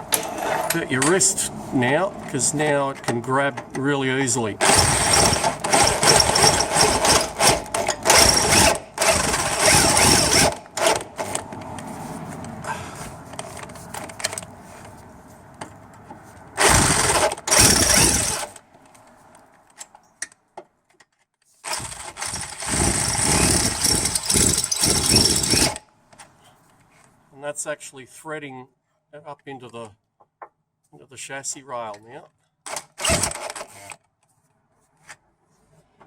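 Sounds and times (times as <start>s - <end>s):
electric drill drilling bolt: 4.6s - 11.4s, 16.6s - 18.6s, 21.7s - 25.8s, 32.7s - 34.0s.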